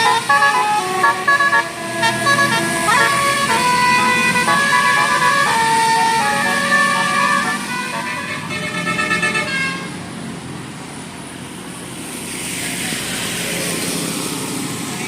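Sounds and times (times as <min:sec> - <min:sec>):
musical bus horn melody: 0:00.0 - 0:10.0
vehicle and traffic noise: 0:00.0 - 0:15.0.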